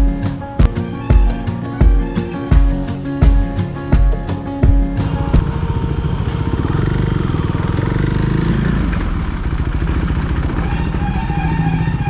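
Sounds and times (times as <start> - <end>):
motorcycle engine idling: 4.7 - 12.0.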